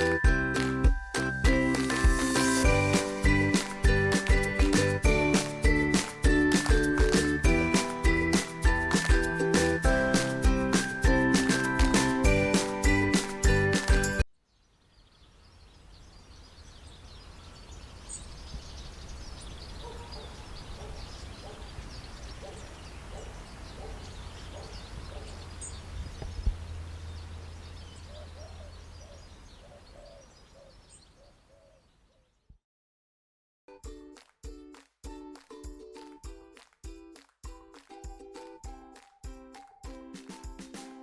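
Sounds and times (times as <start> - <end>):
birds chirping: 12.4 - 32.5
low repeated bird calls: 14.4 - 32.5.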